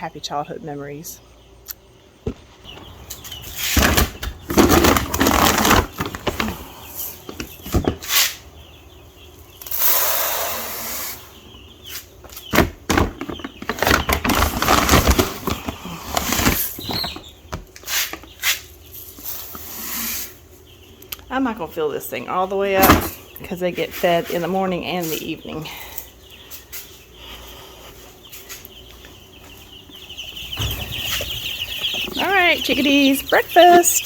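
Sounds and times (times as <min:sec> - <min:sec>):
chick feeder being handled: 0:02.3 - 0:08.4, 0:11.8 - 0:20.3, 0:22.7 - 0:34.0.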